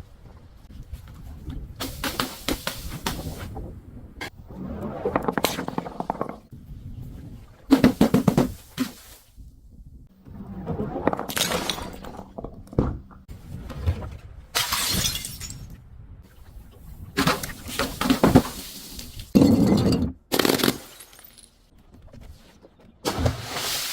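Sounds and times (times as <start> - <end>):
glass bottles breaking: 14.6 - 15.7, 19.3 - 21.6.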